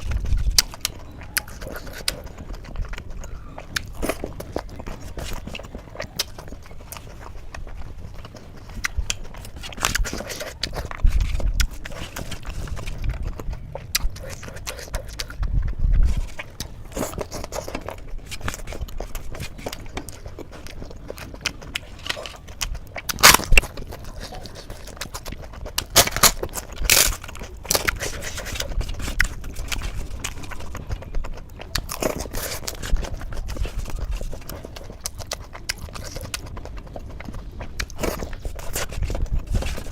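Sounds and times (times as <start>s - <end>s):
person chewing soft food: 0.0s - 39.9s.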